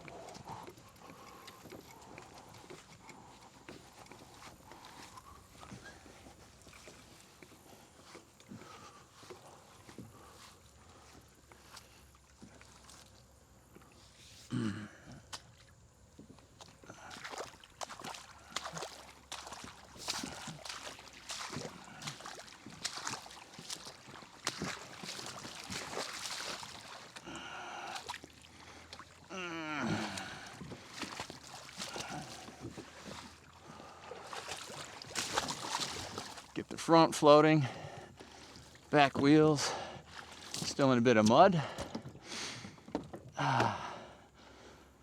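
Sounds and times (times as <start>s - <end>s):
mud and water sloshing: 0.0s - 44.8s.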